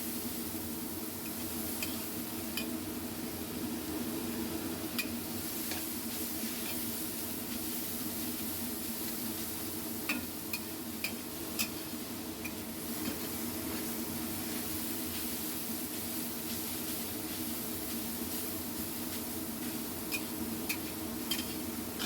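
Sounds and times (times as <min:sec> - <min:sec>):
food sizzling in a pan: 0:00.0 - 0:22.0
spatula clicking against pan: 0:10.1 - 0:11.8, 0:20.1 - 0:21.6.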